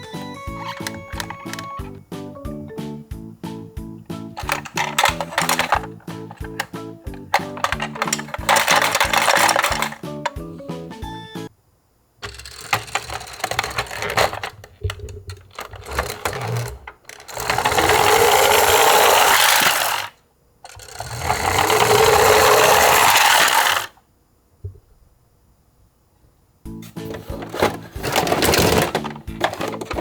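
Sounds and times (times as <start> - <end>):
toy truck whirring as it rolls: 0.0 - 1.9, 4.3 - 10.4, 12.2 - 24.0, 27.1 - 30.0
plastic toy clicks and rattles: 0.4 - 1.9, 4.3 - 10.4, 12.2 - 24.0, 27.1 - 30.0.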